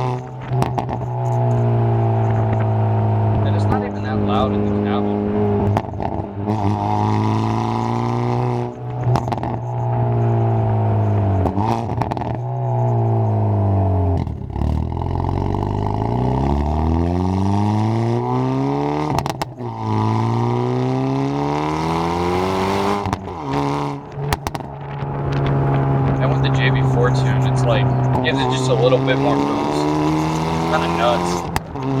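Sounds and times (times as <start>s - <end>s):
car engine revving through gears: 0.0s - 32.0s
exhaust cracks on gear shifts: 0.0s - 32.0s.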